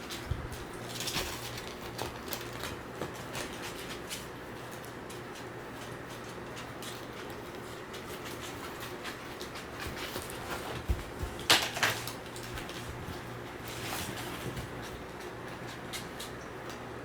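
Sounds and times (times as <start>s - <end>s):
puppy claws clicking on hard floor: 0.0s - 16.9s.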